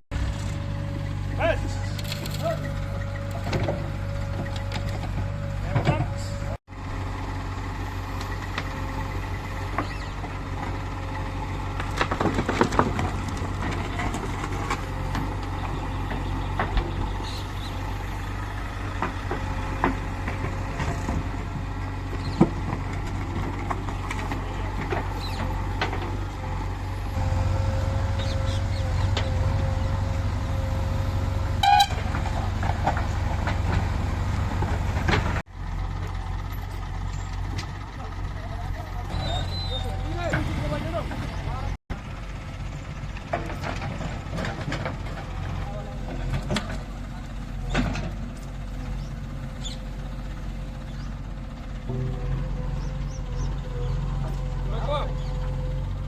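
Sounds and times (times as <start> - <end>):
diesel engine running: 0.1 - 56.0
knocks and clanks: 11.7 - 17.7, 18.8 - 27.2, 31.6 - 35.4.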